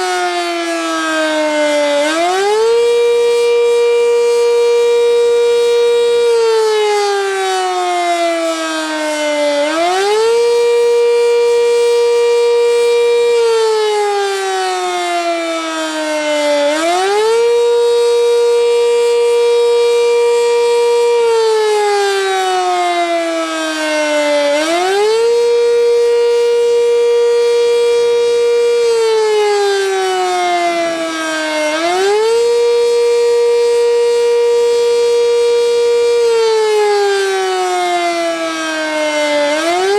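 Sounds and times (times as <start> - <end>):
warning siren rising and falling: 0.0 - 39.9.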